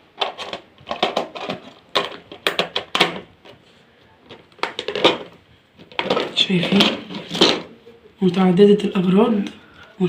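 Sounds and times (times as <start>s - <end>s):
kitchenware knocks and clatters: 4.6s - 7.7s.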